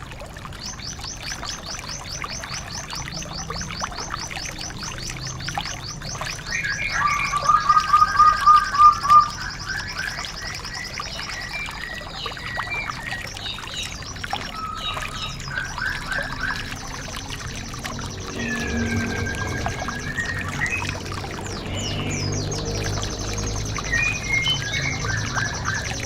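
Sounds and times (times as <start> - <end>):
bird chirps: 1.5 - 26.0
repeated whistled bird notes: 6.0 - 26.0.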